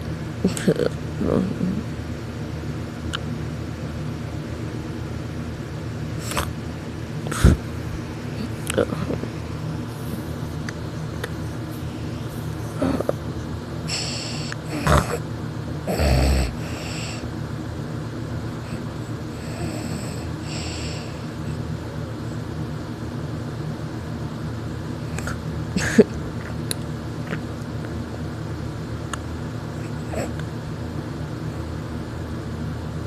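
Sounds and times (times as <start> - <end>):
person snoring: 12.6 - 13.2, 13.9 - 15.2, 15.9 - 17.2, 19.4 - 21.3.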